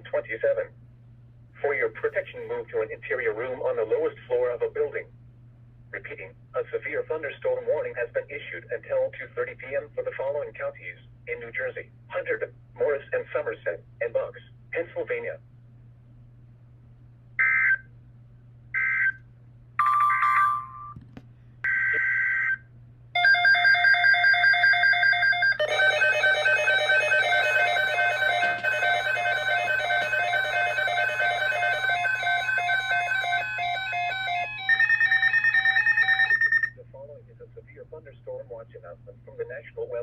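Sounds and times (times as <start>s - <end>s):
warbling alert tone: 19.8s - 21.0s.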